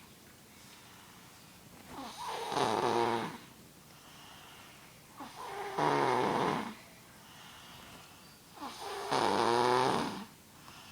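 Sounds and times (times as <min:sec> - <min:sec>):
quiet breathing: 0:00.5 - 0:02.6, 0:03.3 - 0:09.2, 0:09.9 - 0:10.9
boy snoring loudly: 0:02.0 - 0:03.5, 0:05.2 - 0:06.8, 0:08.6 - 0:10.3.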